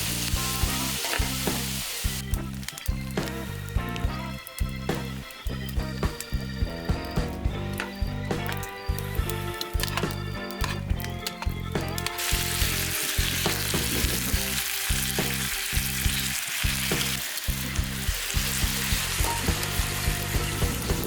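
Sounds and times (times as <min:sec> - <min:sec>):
vegetables sizzling in a frying pan: 0:00.0 - 0:04.3, 0:11.8 - 0:21.0.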